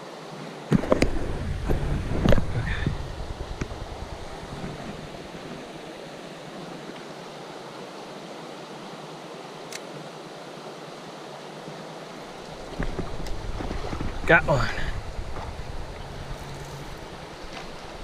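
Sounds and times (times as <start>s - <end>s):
creek water rushing: 0.0s - 18.0s.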